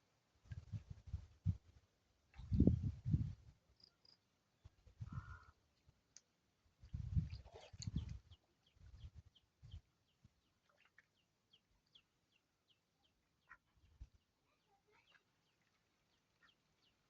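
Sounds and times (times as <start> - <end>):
faint bird peeping: 5.0 - 5.6, 7.2 - 17.0.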